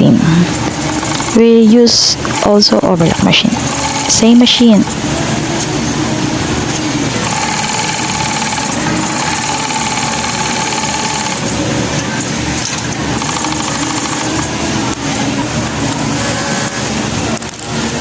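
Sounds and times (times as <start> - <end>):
factory machines din: 0.0 - 18.0
sewing machine humming: 0.3 - 5.3, 6.9 - 17.9.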